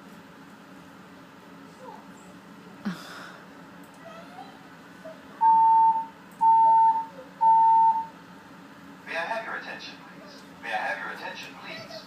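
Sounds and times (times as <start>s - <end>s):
fire alarm beeps: 5.4s - 8.1s.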